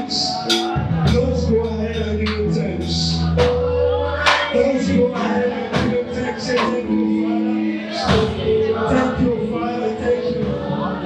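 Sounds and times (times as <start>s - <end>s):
drum and cymbal strikes: 0.0s - 7.1s
bass: 0.0s - 11.0s
keyboard chords: 0.0s - 11.0s
person singing: 0.0s - 11.0s.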